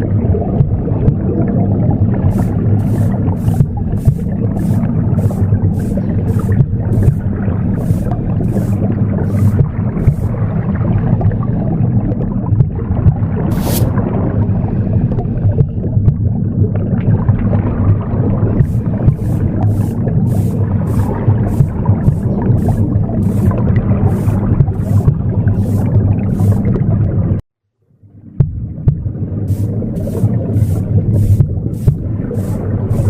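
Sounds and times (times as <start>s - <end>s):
low rumbling womb sound: 0.0s - 27.4s, 28.0s - 33.0s
broom sweeping: 2.3s - 10.4s, 13.5s - 14.0s, 18.6s - 26.8s, 29.5s - 33.0s.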